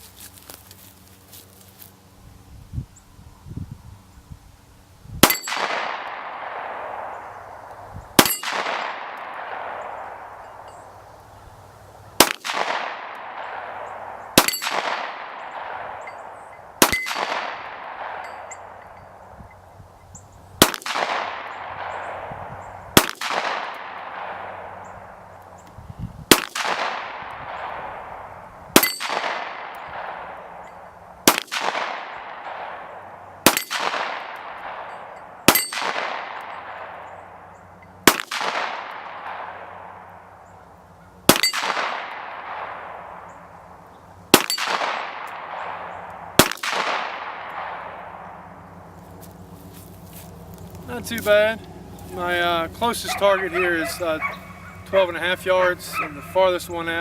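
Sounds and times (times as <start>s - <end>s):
pistol shots with ringing tail: 5.2s - 11.0s, 12.2s - 19.3s, 20.6s - 25.2s, 26.3s - 40.2s, 41.3s - 43.6s, 44.3s - 48.8s.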